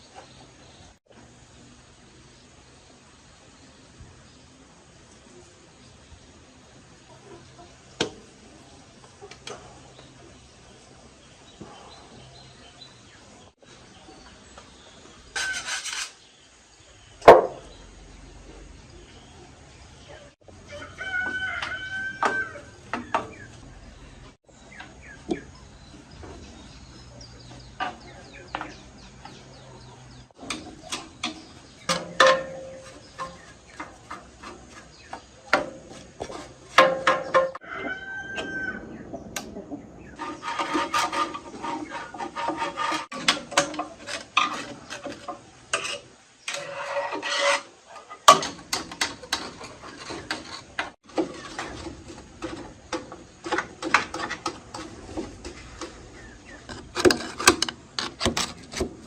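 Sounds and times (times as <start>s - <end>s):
scraping and tapping on machine parts: 15.3s - 16.3s, 30.4s - 37.6s, 40.2s - 59.0s
rooster crowing: 20.6s - 22.8s, 37.6s - 39.0s.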